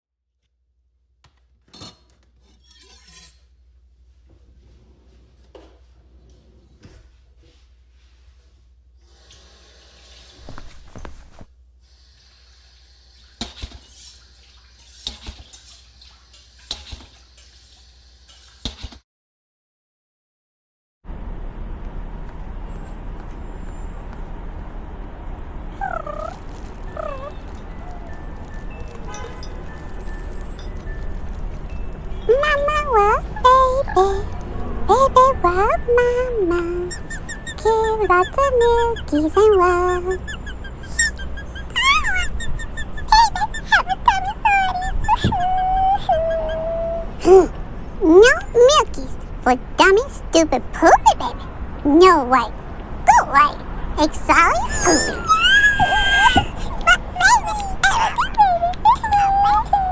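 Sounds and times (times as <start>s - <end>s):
squeaky calls: 25.8s - 47.5s, 53.1s - 59.9s
small hard objects clattering: 26.3s - 32.3s.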